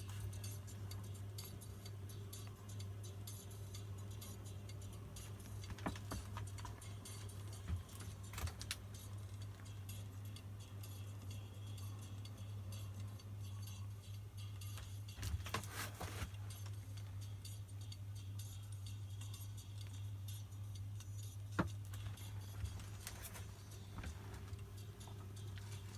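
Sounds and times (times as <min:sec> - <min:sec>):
fine continuous ticking: 0:00.0 - 0:15.5, 0:16.4 - 0:25.9.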